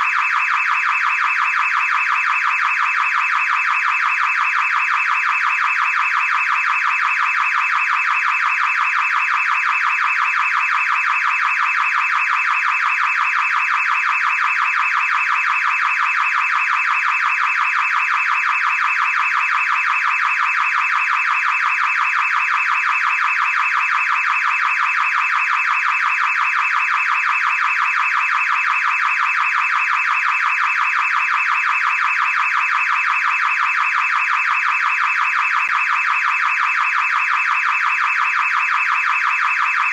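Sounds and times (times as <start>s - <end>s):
car alarm siren: 0.0s - 39.9s.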